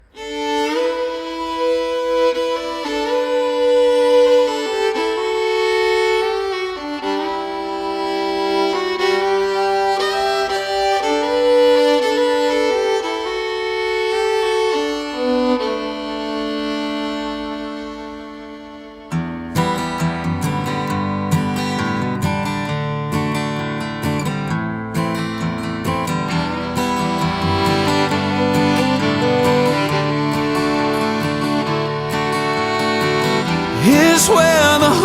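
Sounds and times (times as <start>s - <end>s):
slow fiddle melody: 0.0s - 35.0s.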